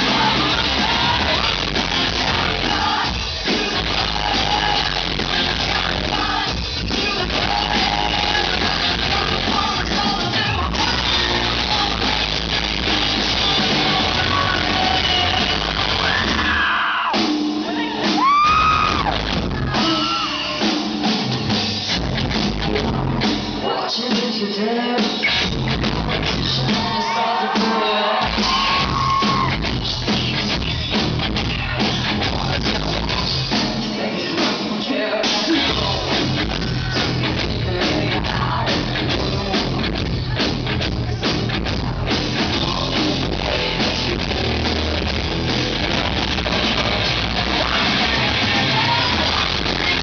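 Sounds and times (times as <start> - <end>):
rock band playing live: 0.0 - 50.0.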